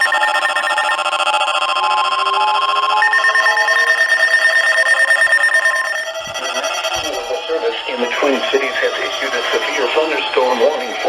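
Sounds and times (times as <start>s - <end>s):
repeating beep pattern: 0.0s - 1.1s, 2.1s - 7.4s
steady electronic alert tones: 0.0s - 11.0s.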